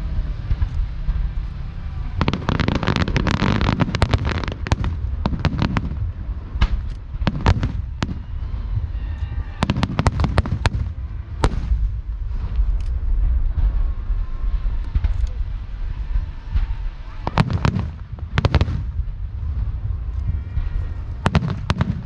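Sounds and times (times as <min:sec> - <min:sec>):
fireworks bangs: 0:00.0 - 0:22.0
fireworks crackling: 0:00.0 - 0:22.0.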